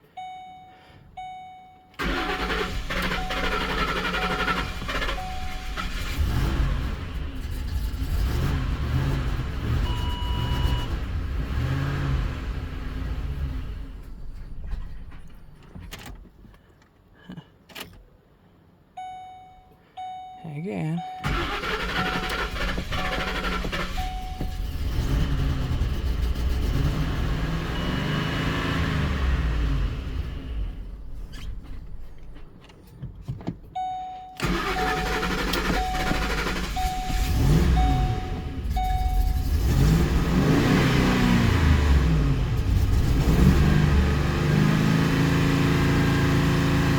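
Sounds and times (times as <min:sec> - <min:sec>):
engine revving unevenly: 0:02.0 - 0:13.9, 0:21.2 - 0:30.8, 0:34.4 - 0:46.9
electronic beep: 0:35.7 - 0:39.5.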